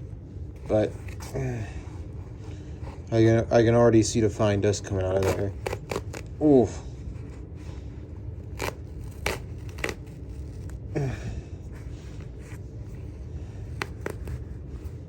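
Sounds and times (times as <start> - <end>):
steady low hum: 0.0 - 15.0
paper bag rustling and tearing: 5.0 - 6.6, 8.4 - 10.9.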